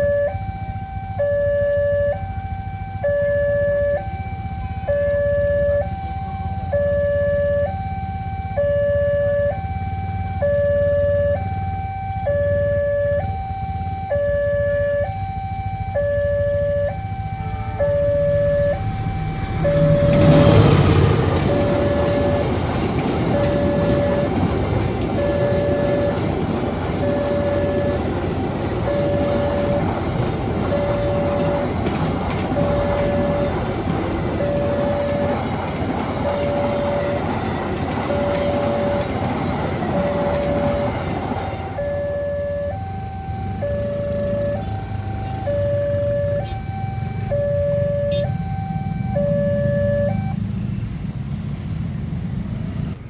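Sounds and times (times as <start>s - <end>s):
level crossing two-note alarm: 0.0s - 50.4s
train passing with rumble: 0.0s - 53.0s.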